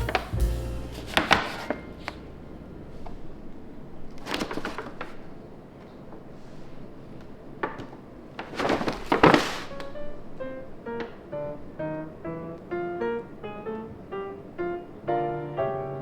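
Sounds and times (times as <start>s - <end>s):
plucked-string music: 0.0s - 2.5s
paper bag rustling: 0.0s - 10.3s.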